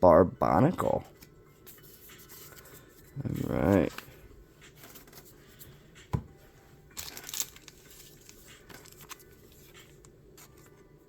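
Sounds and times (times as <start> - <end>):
packaging crinkling and tearing: 7.0 - 9.8.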